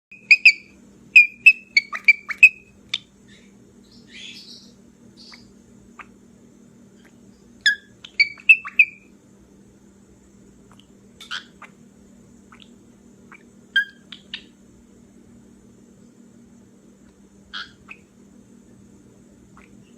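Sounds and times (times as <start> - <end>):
cockatiel squeaking: 0.1 - 2.7, 7.6 - 9.0, 11.2 - 11.7, 13.8 - 14.5, 17.5 - 18.1
soft raspy bird sounds: 0.1 - 6.2, 6.9 - 9.1, 10.6 - 11.8, 12.4 - 14.6, 17.0 - 18.2, 19.4 - 19.9.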